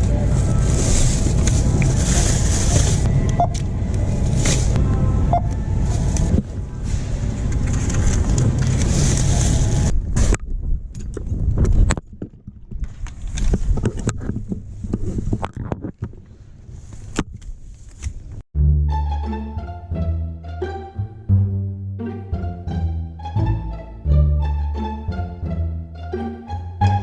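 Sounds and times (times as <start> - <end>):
car driving rumble: 0.0 - 12.2.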